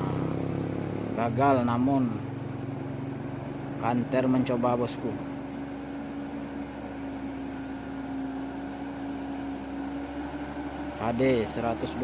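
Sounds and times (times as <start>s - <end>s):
truck diesel engine droning: 0.0s - 12.0s.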